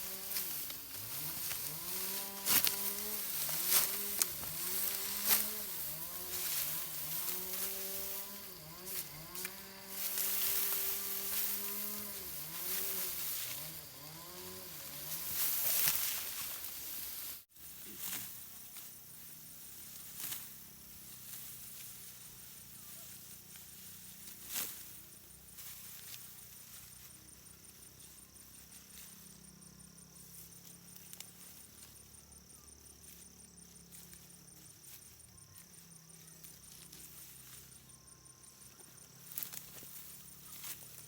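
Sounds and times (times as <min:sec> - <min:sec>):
insects trilling: 0:00.0 - 0:41.0.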